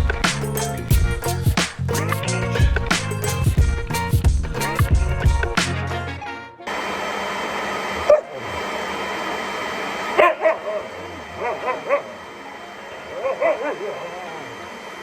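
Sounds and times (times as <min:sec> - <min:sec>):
background music: 0:00.0 - 0:06.7
dog barking and yipping: 0:10.2 - 0:12.2, 0:13.1 - 0:14.1.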